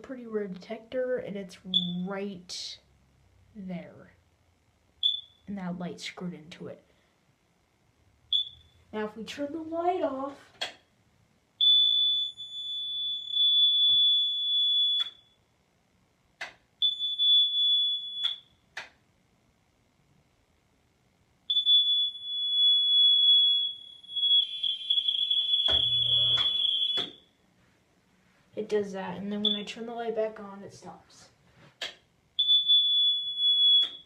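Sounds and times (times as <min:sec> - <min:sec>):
smoke alarm high-pitched tone: 0:01.7 - 0:02.1, 0:05.0 - 0:05.4, 0:08.3 - 0:08.8, 0:11.6 - 0:15.4, 0:16.8 - 0:18.6, 0:21.5 - 0:27.4, 0:29.4 - 0:29.8, 0:32.4 - 0:34.0.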